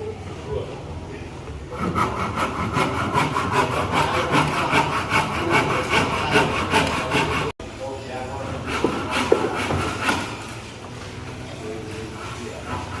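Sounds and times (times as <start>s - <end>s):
hand saw cutting wood: 1.7s - 7.6s, 8.4s - 10.5s, 12.0s - 13.0s.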